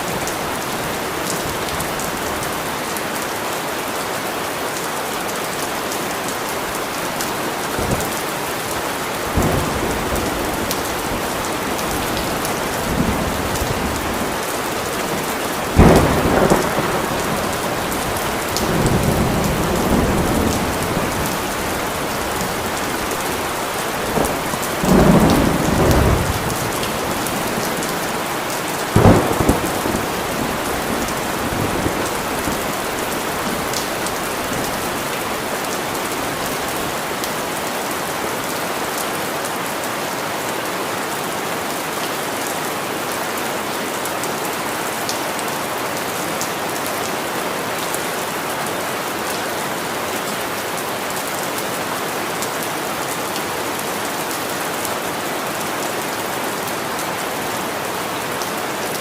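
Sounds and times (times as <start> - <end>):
heavy rain falling: 0.0 - 59.0
rumbling thunder rolls: 15.7 - 27.6, 29.0 - 34.7
thunder clap: 15.7 - 27.8, 29.0 - 34.8.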